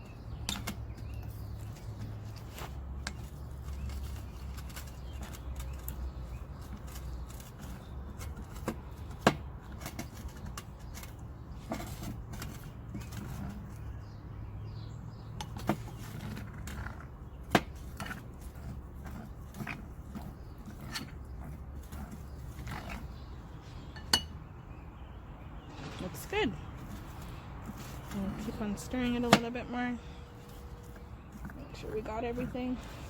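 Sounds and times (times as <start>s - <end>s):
spoon stirring thick slime: 15.4s - 24.3s, 26.8s - 33.0s.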